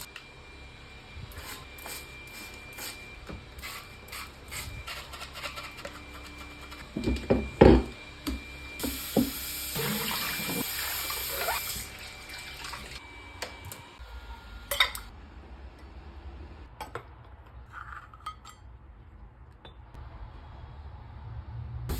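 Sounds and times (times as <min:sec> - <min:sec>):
water running and splashing: 0:08.9 - 0:13.0.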